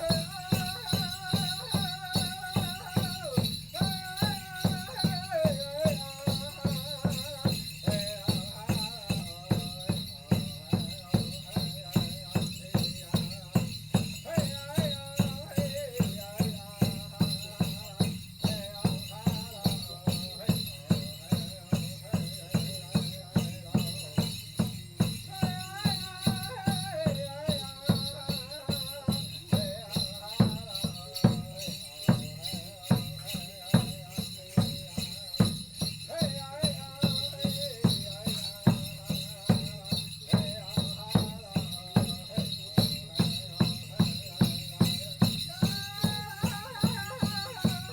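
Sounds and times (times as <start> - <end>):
person singing: 0.0 - 7.2, 45.2 - 47.9
bright jingling: 0.0 - 47.9
drum beating steadily: 0.0 - 47.9.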